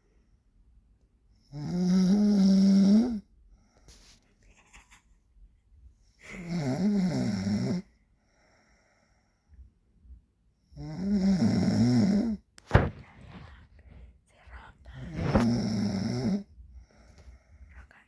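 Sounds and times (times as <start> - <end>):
man snoring: 1.5 - 3.2, 6.4 - 7.9
sharp knock: 12.6 - 14.0.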